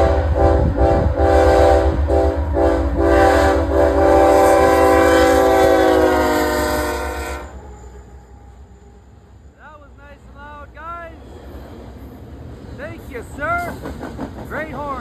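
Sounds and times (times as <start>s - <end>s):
locomotive air horn blasts: 0.0s - 7.7s
low train rumble: 0.0s - 15.0s.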